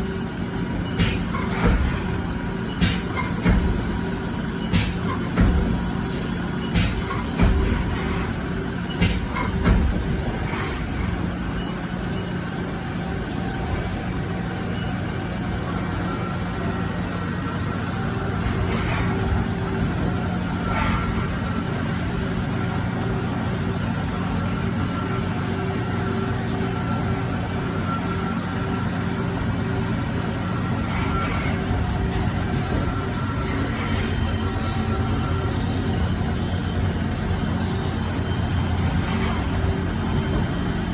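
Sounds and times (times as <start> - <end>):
lathe running hum: 9.8 - 40.9.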